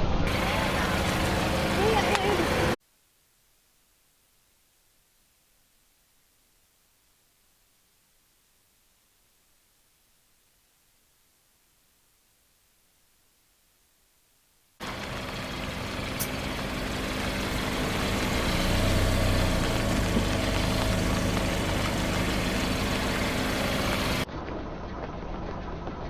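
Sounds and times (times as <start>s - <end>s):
car engine running: 0.3s - 2.8s, 14.8s - 24.2s.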